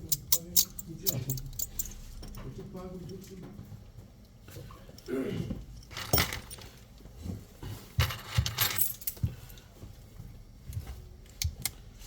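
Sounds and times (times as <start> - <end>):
small metal objects clinking: 0.0 - 2.0.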